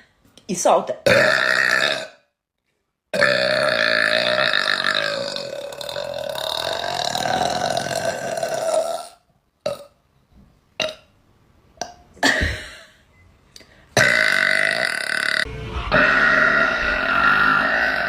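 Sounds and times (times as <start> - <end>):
woman belching: 1.0 - 2.2, 3.2 - 9.9, 14.0 - 15.4.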